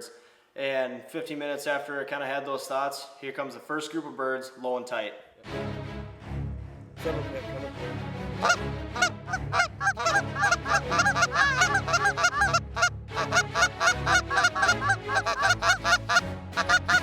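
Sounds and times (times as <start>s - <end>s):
geese honking: 8.4s - 17.0s.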